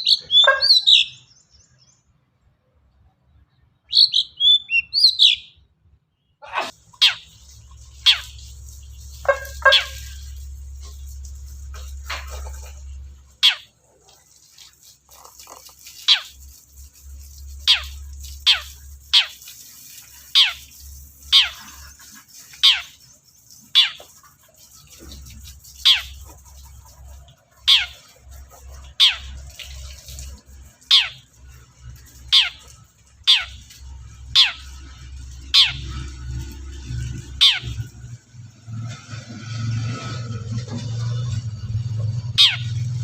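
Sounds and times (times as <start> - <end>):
shrike calling: 6.4 - 13.8, 14.6 - 36.2, 37.2 - 38.0, 42.3 - 43.0.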